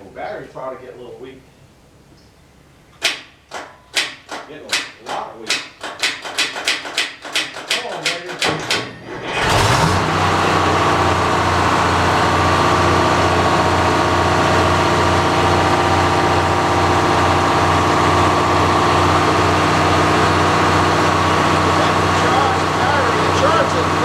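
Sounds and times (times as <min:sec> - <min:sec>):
engine cranking and running: 0:05.8 - 0:24.0.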